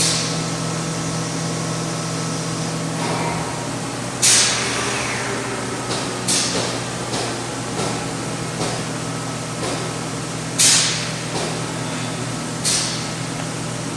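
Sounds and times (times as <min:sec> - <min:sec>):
machine hum: 0:00.0 - 0:13.9
air hissing bursts: 0:02.8 - 0:09.1, 0:10.6 - 0:11.2.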